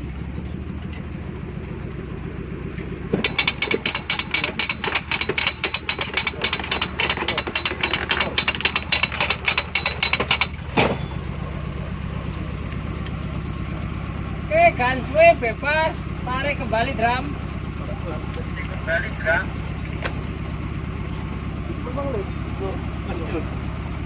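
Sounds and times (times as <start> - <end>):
engine idling: 0.0 - 24.0
rapid metallic clattering: 3.1 - 11.1.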